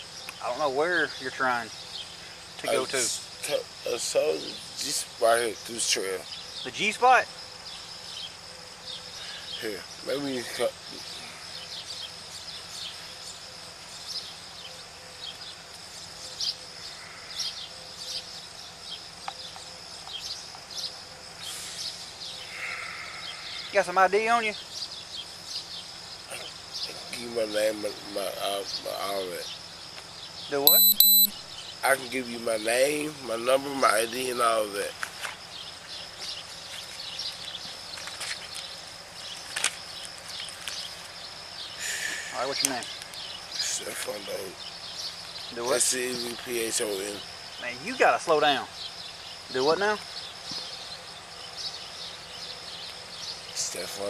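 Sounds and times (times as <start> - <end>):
birds chirping: 0.0 - 54.0
high insect drone: 0.0 - 54.0
short chirps: 30.7 - 31.4.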